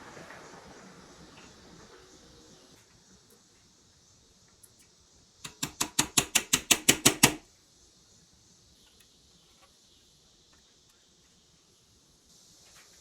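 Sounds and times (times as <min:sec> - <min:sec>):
sharp taps: 0:05.4 - 0:07.4.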